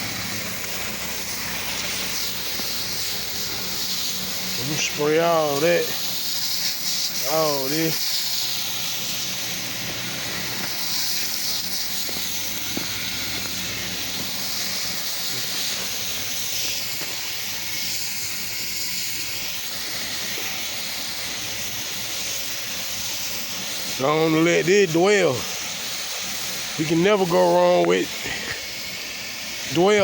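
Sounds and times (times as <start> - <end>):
low motor hum: 0.0 - 23.9
spray hissing: 0.0 - 30.0.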